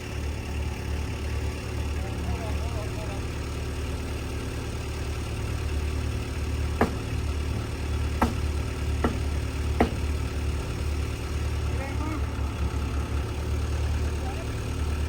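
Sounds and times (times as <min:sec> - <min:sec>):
engine idling: 0:00.0 - 0:15.0
sharp knocks: 0:06.8 - 0:07.2, 0:08.2 - 0:10.1.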